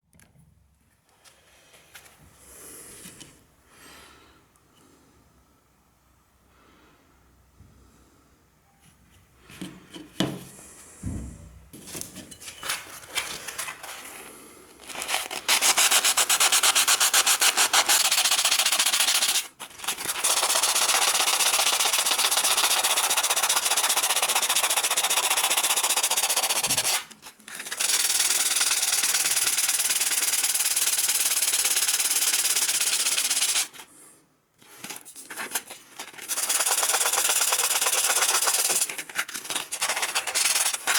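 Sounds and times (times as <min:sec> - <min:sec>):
rasping sanding of knife: 0:15.3 - 0:33.7, 0:36.1 - 0:40.9.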